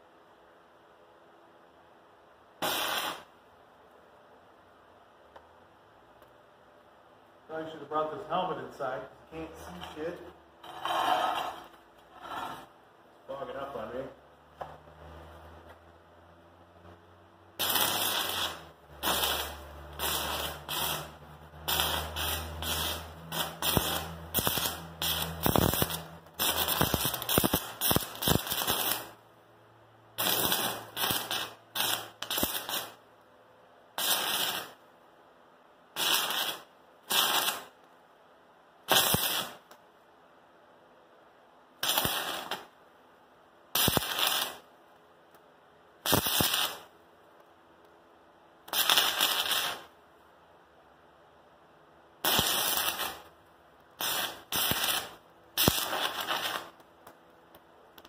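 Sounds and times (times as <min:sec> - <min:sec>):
welding arc crackling: 0:02.6 - 0:03.3, 0:17.6 - 0:29.2, 0:30.2 - 0:33.0, 0:34.0 - 0:34.8, 0:36.0 - 0:37.8, 0:38.9 - 0:39.8, 0:41.8 - 0:42.8, 0:43.7 - 0:44.7, 0:46.0 - 0:46.9, 0:48.7 - 0:49.9, 0:52.2 - 0:57.2.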